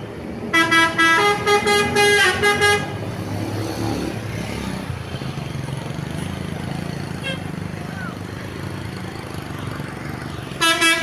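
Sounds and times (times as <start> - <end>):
multi-tone bus horn tune: 0.5 - 3.0, 7.2 - 7.6, 10.6 - 11.0.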